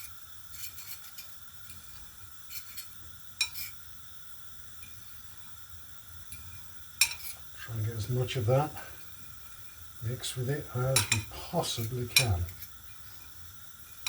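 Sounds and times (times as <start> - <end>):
utensil clinking and scraping dish: 0.0 - 3.8, 6.3 - 7.5, 10.8 - 14.0.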